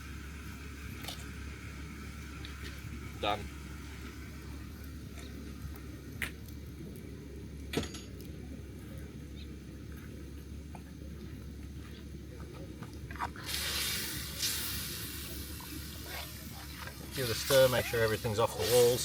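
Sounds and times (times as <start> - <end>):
low background noise: 0.0 - 19.0
food sizzling in pot: 13.4 - 19.0.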